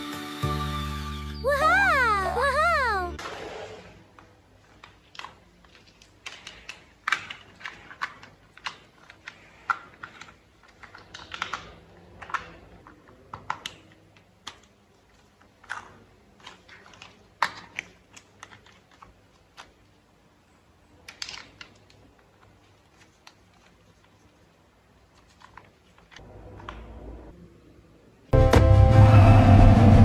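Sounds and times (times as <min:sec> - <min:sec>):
plastic parts clicking and snapping: 0:04.2 - 0:20.0, 0:20.9 - 0:26.9.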